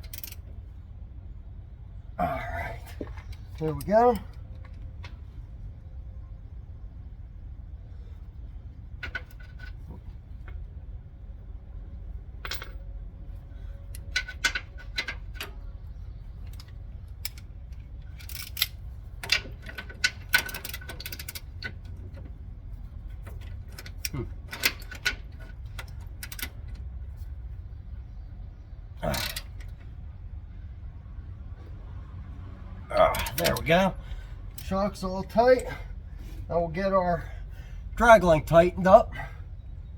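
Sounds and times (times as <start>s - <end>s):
wrench and hardware clinking: 0.0s - 0.4s, 12.3s - 13.0s, 13.7s - 15.8s, 16.4s - 22.4s, 23.1s - 26.8s, 29.0s - 29.9s, 33.0s - 33.9s, 34.5s - 36.4s
steady low hum: 0.0s - 39.9s.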